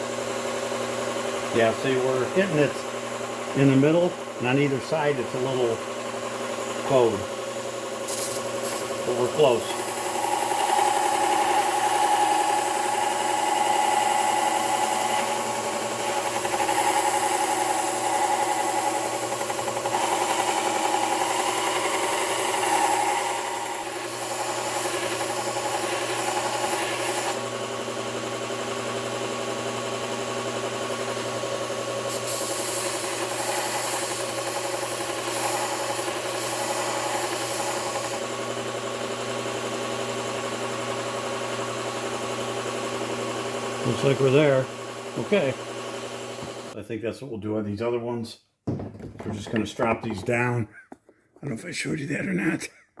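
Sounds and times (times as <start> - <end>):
belt sharpener motor hum: 0.2 - 46.8
chisel grinding on abrasive belt: 8.0 - 27.4, 32.1 - 38.2.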